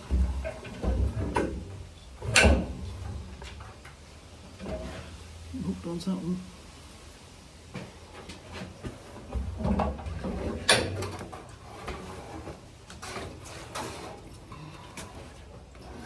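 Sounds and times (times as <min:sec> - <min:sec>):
metal knocks and scraping: 0:00.0 - 0:04.0, 0:08.4 - 0:14.4.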